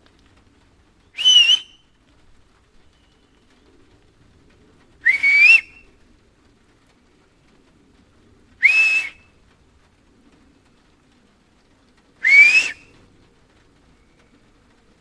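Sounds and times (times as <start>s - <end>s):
loud finger whistles: 1.2s - 1.8s, 5.1s - 5.8s, 8.6s - 9.2s, 12.2s - 12.9s
faint whistle echo: 1.2s - 2.0s, 5.0s - 5.9s, 8.6s - 9.3s, 12.2s - 13.0s.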